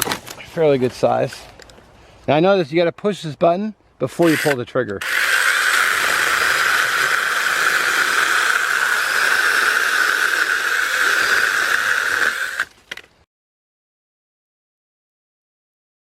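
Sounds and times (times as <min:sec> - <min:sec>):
mini chainsaw cutting log: 0:04.2 - 0:13.1.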